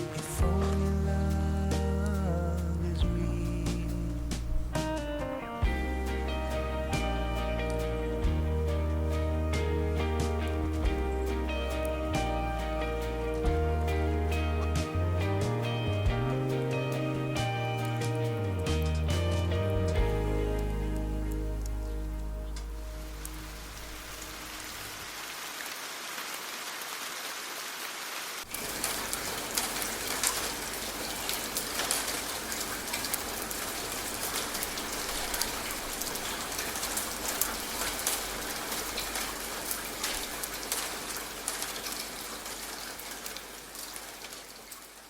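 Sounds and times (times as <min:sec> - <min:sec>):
rain falling: 0:00.0 - 0:45.0
raindrops pattering on a surface: 0:22.6 - 0:45.0.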